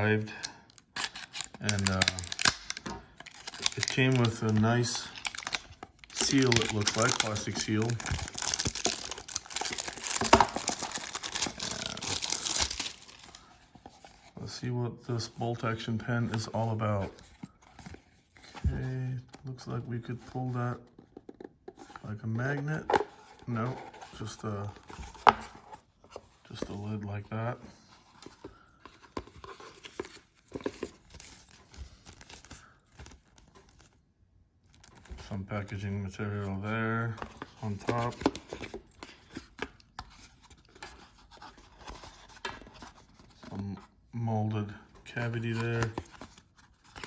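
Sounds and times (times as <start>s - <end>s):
plastic wrap crinkling: 0.8s - 13.4s.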